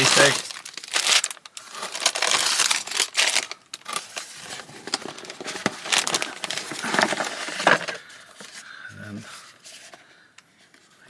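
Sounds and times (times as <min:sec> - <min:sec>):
plastic bags crinkling: 0:00.0 - 0:08.1.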